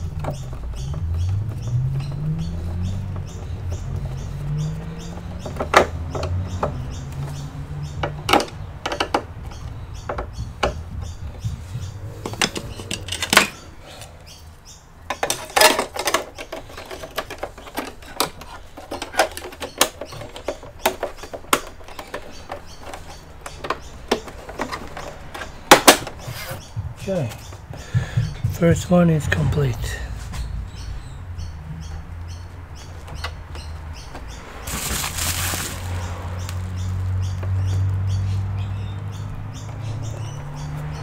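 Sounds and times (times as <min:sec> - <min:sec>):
low hum: 0:29.1 - 0:32.7.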